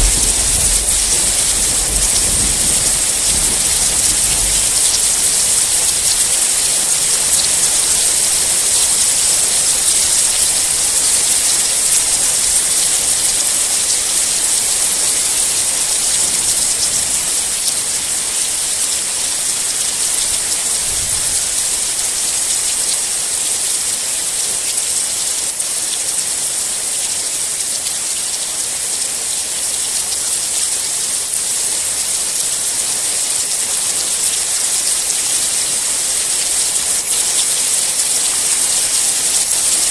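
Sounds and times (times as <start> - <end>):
heavy rain falling: 0.0 - 39.9.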